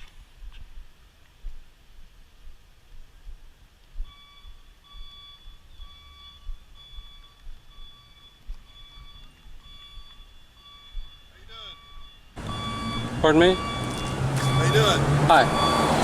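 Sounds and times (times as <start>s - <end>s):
high electronic beeps: 4.1s - 16.0s.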